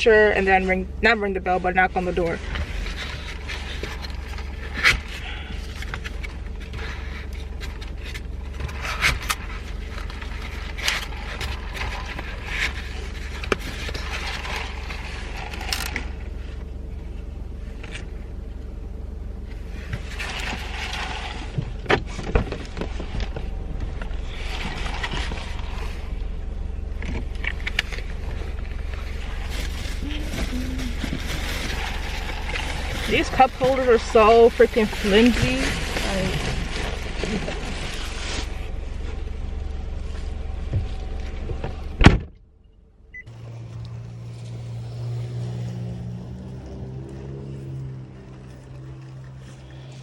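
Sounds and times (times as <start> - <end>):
steady low hum: 0.0 - 50.0
scrapes and rustles: 2.0 - 18.2, 19.4 - 42.0.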